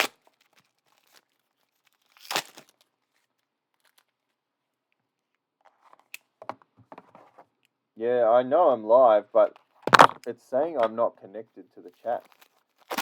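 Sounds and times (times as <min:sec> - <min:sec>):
plastic wrapping crinkling and tearing: 0:00.0 - 0:04.4, 0:12.0 - 0:13.0.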